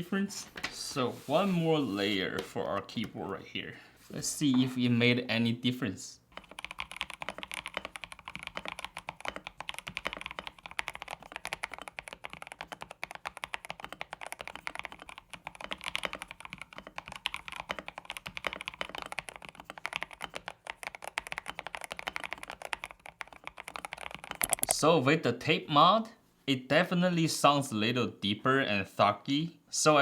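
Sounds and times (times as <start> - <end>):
fast typing on mechanical keyboard: 6.3 - 24.8.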